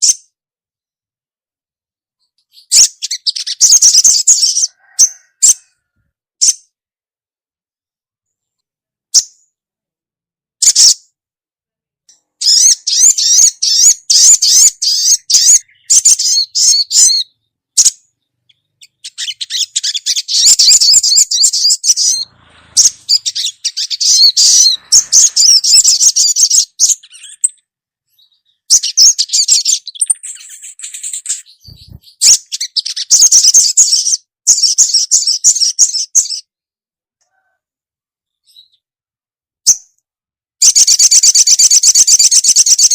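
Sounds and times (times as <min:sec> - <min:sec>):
bird chattering chirps: 0:02.5 - 0:05.7, 0:12.4 - 0:36.4.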